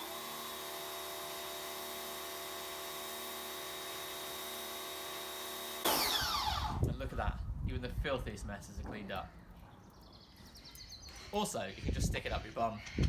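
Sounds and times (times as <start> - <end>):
pressure washer running: 0.0 - 6.8.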